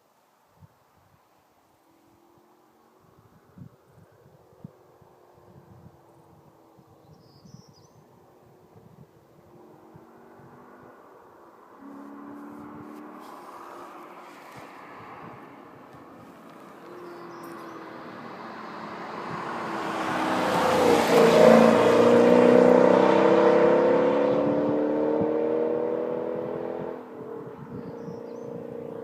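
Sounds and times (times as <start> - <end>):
car exhaust accelerating past: 9.6 - 29.0.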